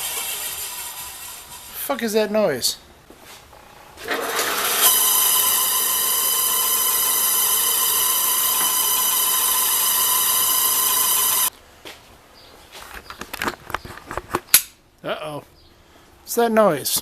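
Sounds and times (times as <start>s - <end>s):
drill press whining: 4.0s - 11.5s.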